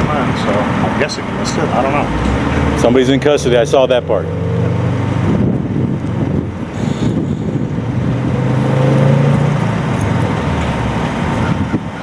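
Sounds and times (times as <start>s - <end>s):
engine humming: 0.0s - 12.0s.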